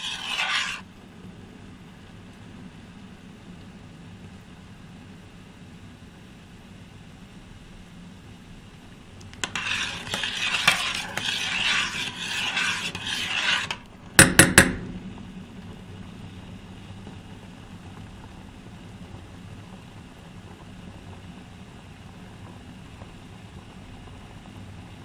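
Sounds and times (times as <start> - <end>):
spoon scraping in a pot: 0.0 - 0.8, 9.2 - 15.2
low steady hum: 0.0 - 25.0
sharp knocks: 14.2 - 15.3.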